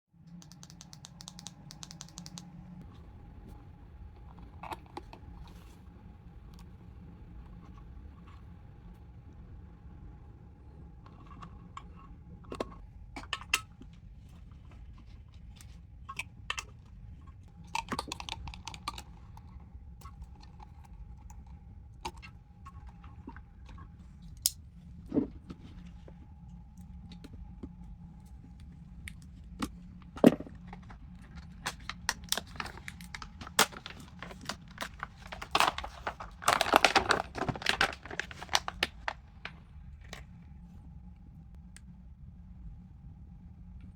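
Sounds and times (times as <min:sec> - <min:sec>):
faint steady whine: 0:00.2 - 0:43.9
small hard objects clicking: 0:00.3 - 0:02.5
rustling: 0:30.8 - 0:39.5.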